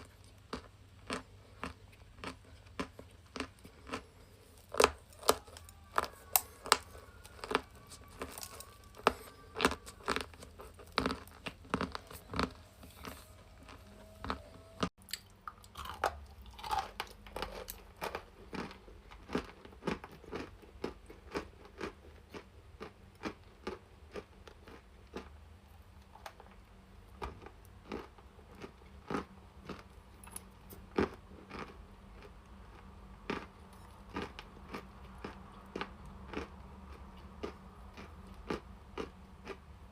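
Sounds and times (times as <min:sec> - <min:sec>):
chalk being chewed: 0:00.0 - 0:15.9.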